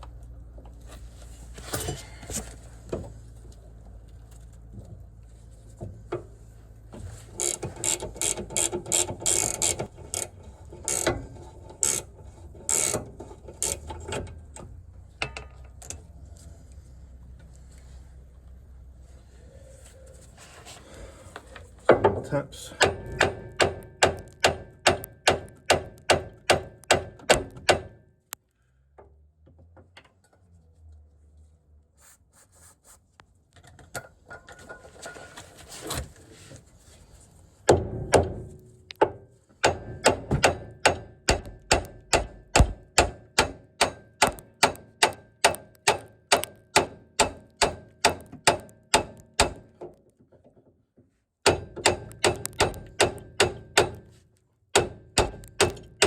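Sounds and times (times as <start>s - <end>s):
metal scraping and handling: 33.8s - 37.0s.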